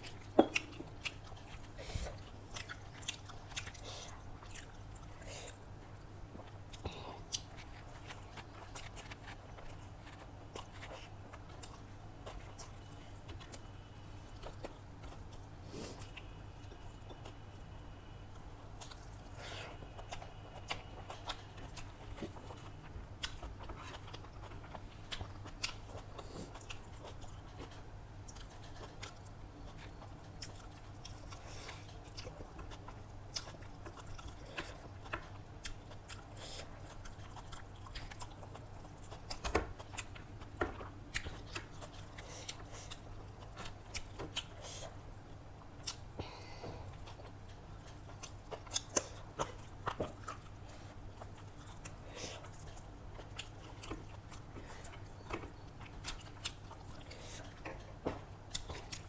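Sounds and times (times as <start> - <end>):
person chewing food: 0.0 - 17.7, 18.3 - 59.0
steady low hum: 0.0 - 59.0.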